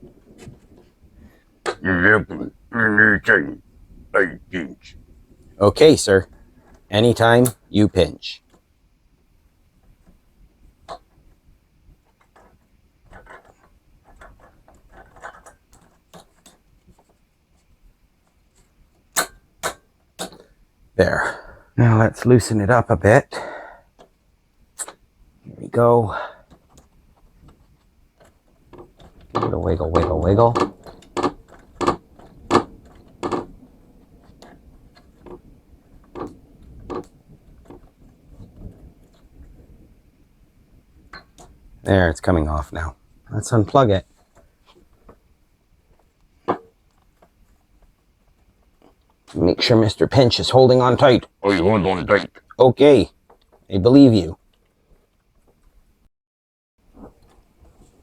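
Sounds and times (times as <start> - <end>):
faint clicks taps and scrapes: 0.0 - 1.8, 9.7 - 20.6, 23.9 - 25.1, 26.3 - 42.0, 42.6 - 49.5, 52.4 - 56.0, 56.8 - 58.0.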